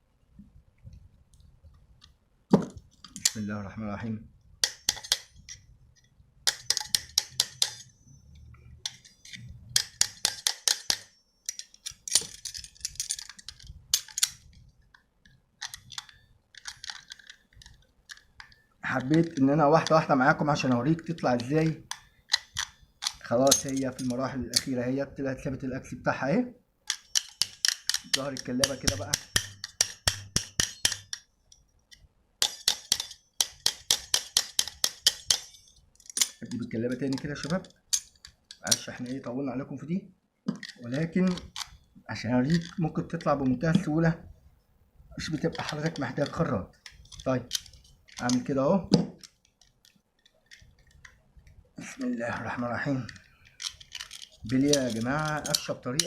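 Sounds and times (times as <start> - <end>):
metal-on-metal tapping: 4.6 - 5.6, 6.4 - 8.0, 8.8 - 20.0, 21.0 - 24.8, 26.9 - 38.9, 53.1 - 56.0.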